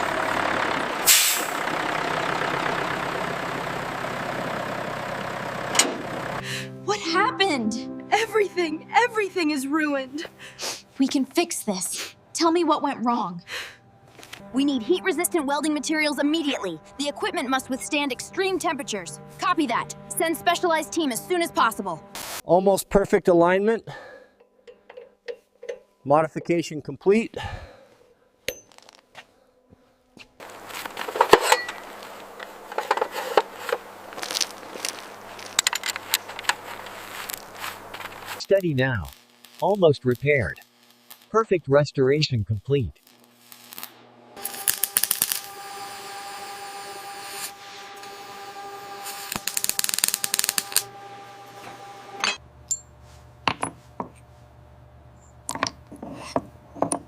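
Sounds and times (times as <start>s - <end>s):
steady hum: 0.8s - 22.4s, 30.4s - 41.5s
clicks and taps of repair work: 24.4s - 25.9s, 55.5s - 57.0s
metal tools clicking and clinking: 24.4s - 25.9s, 31.1s - 31.9s, 32.7s - 37.0s.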